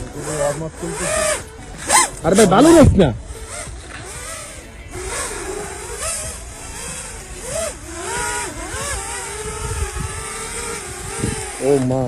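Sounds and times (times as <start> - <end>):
drone motors whining: 0.0 - 12.0.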